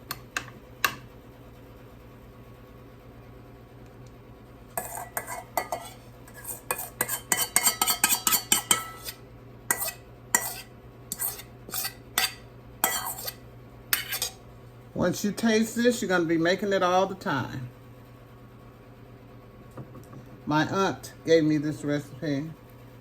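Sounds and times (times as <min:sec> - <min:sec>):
spoon scraping and clinking dish: 0:04.7 - 0:14.4.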